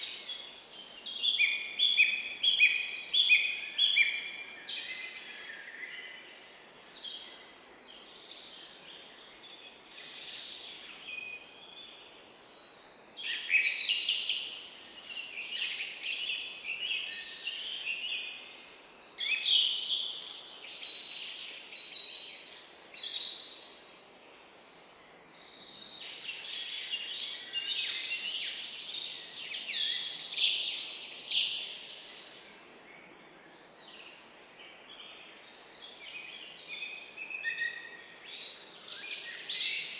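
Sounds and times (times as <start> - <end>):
faint background hiss: 0.0 - 39.9
songbirds chirping and singing: 33.0 - 39.9.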